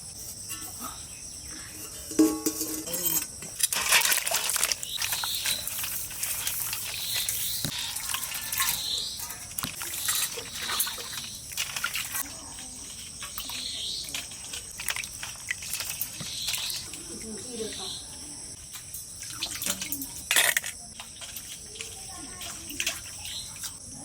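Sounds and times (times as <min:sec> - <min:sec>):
insect chirring: 0:00.0 - 0:24.0
hands splashing water: 0:04.2 - 0:17.9
water dripping: 0:04.2 - 0:24.0.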